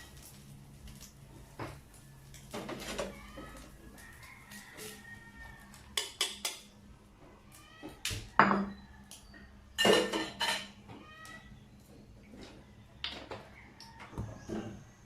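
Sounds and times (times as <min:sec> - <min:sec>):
utensils and cookware clattering: 0:00.0 - 0:06.8, 0:07.9 - 0:11.3.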